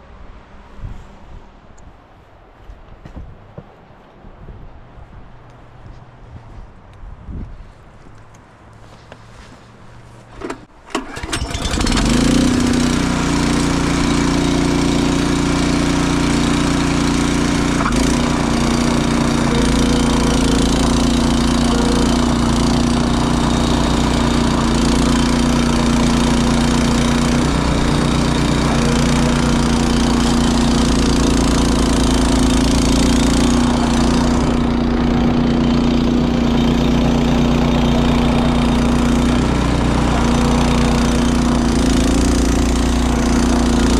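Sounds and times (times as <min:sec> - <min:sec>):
snowblower engine starting: 0:10.2 - 0:43.9.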